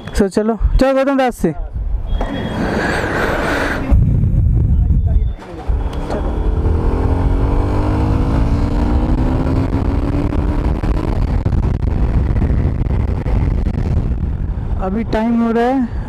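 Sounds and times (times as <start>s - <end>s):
wind rumble on microphone: 1.6s - 16.0s
motorcycle engine accelerating: 5.6s - 14.6s.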